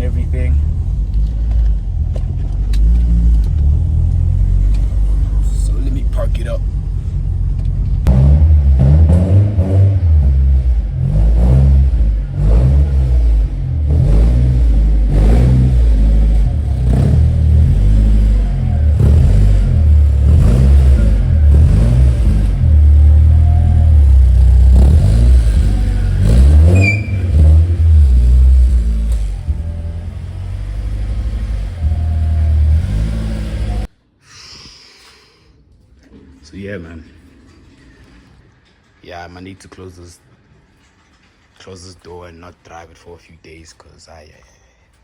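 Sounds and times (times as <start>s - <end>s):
car engine revving: 0.0s - 33.9s
high squeal: 20.9s - 24.7s, 25.4s - 27.7s.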